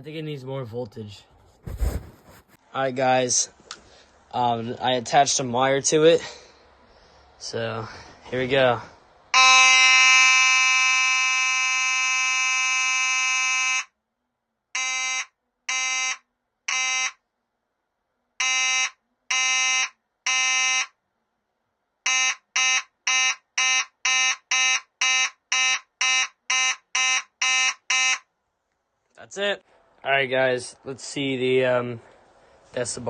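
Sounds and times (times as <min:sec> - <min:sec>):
fire alarm horn blasts: 0:09.3 - 0:13.9, 0:14.8 - 0:17.2, 0:18.4 - 0:21.0, 0:22.1 - 0:28.2.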